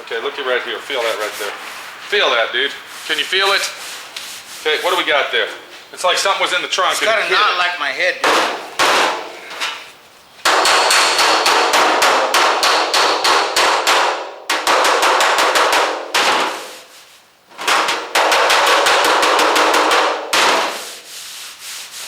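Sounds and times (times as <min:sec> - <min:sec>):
hammer tapping on sheet metal: 0:08.2 - 0:09.4, 0:10.4 - 0:16.9, 0:17.6 - 0:21.1.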